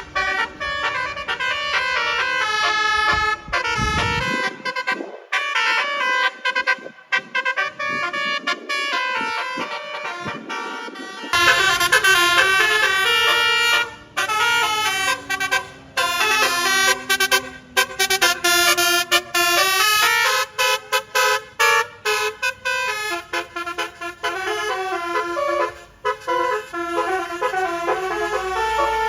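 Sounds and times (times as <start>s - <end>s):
multi-tone bus horn tune: 0.0s - 29.0s.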